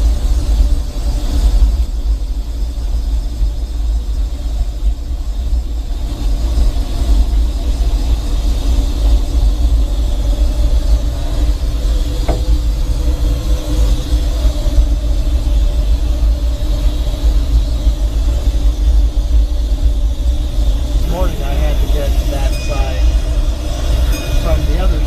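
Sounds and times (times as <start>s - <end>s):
steam locomotive rumble: 0.0s - 25.0s
metal clank: 12.2s - 12.8s.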